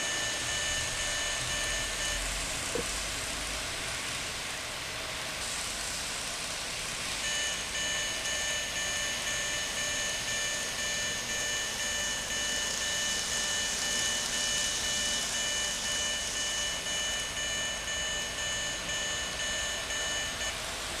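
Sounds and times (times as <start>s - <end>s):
electronic warning bell ringing: 0.0s - 2.4s, 7.2s - 20.6s.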